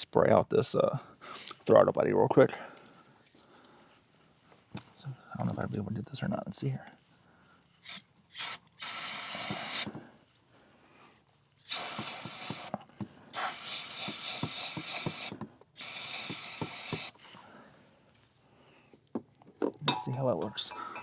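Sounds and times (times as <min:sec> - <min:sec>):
aerosol cleaner hissing bursts: 0:07.8 - 0:10.0, 0:11.6 - 0:17.2.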